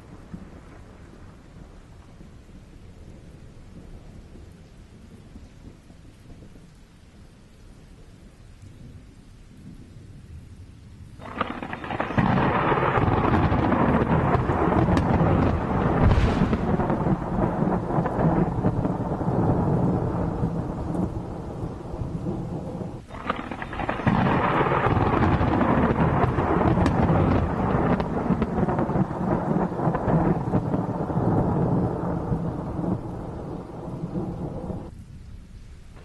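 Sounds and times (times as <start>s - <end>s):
thunder rumbling and cracking: 11.2s - 35.0s.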